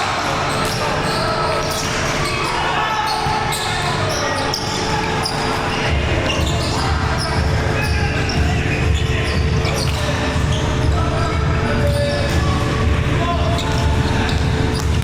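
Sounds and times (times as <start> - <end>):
players' voices echoing in hall: 0.0 - 15.0
volleyballs bouncing and hit: 11.7 - 15.0.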